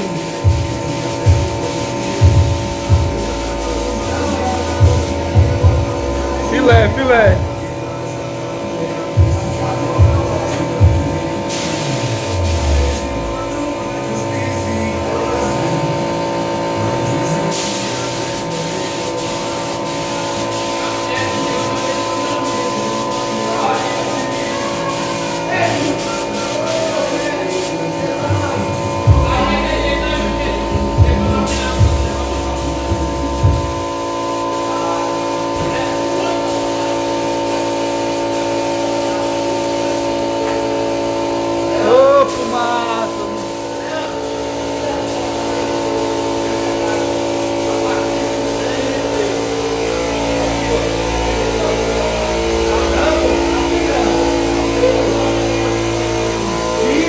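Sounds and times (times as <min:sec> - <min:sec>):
spray gun hissing: 0:00.0 - 0:07.4, 0:11.2 - 0:13.3, 0:17.4 - 0:28.0, 0:28.6 - 0:57.0
steady hum: 0:00.0 - 0:57.0
person's voice: 0:02.0 - 0:07.5, 0:21.1 - 0:33.6, 0:41.8 - 0:45.3, 0:48.6 - 0:57.0.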